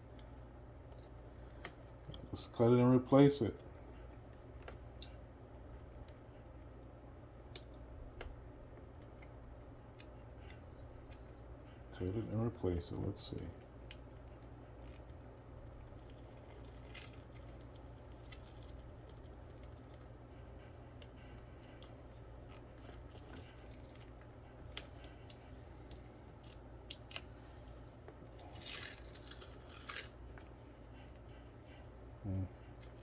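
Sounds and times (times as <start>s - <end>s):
steady low hum: 0.0s - 33.0s
small parts clicking and crinkling: 12.2s - 32.0s
tape or plastic rustling: 22.5s - 31.2s.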